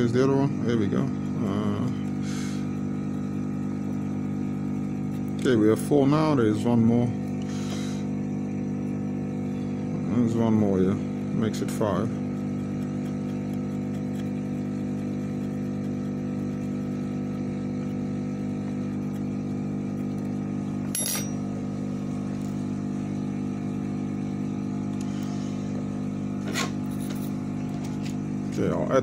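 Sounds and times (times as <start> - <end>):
electrical equipment hum: 0.0 - 29.0.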